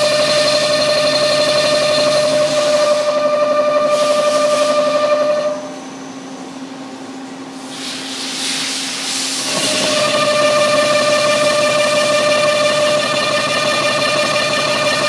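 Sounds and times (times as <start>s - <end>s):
low machine hum: 0.0s - 7.7s, 9.4s - 15.0s
lathe machining whine: 0.0s - 15.0s
hiss: 7.6s - 9.6s.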